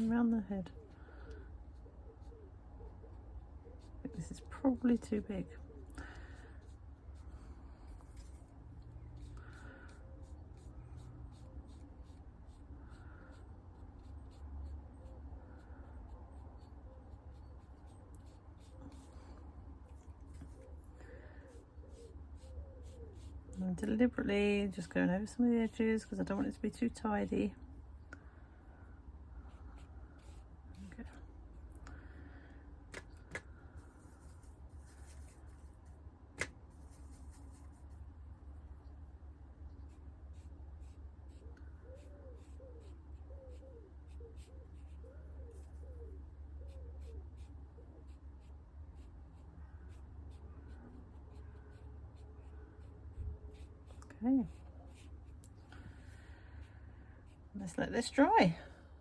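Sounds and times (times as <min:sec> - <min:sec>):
steady low hum: 0:00.0 - 0:59.0
brush rustling on paper: 0:06.1 - 0:27.0, 0:29.4 - 0:31.9, 0:32.9 - 0:38.9, 0:39.6 - 0:56.3
brush stroking on paper: 0:16.0 - 0:27.0, 0:32.9 - 0:38.8.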